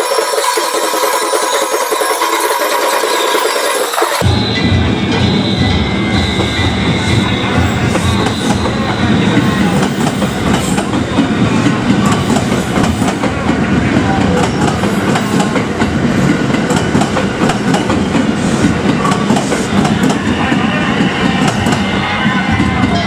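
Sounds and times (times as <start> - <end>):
train wheels clattering over rail joints: 6.2 - 21.9.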